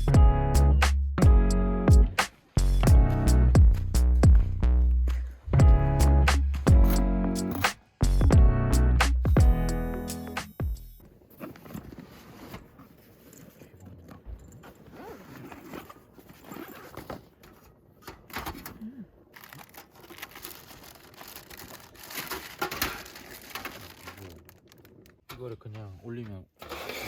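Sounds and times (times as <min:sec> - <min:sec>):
clicks and clatter: 0:13.2 - 0:25.5.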